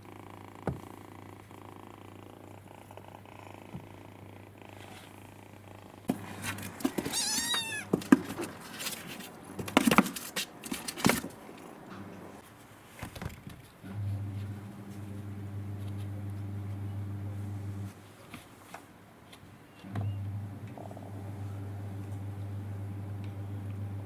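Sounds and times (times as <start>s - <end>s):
knocks and rustling: 6.1s - 12.4s
cat meowing: 7.0s - 8.0s.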